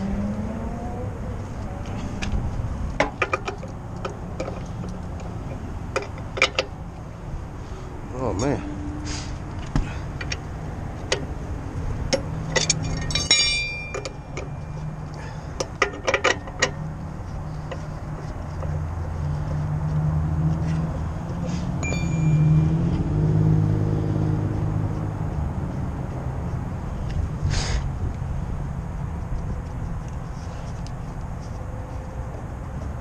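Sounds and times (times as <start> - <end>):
low vehicle rumble: 0.0 - 33.0
steel hand tools clinking: 12.5 - 14.9, 21.8 - 22.7.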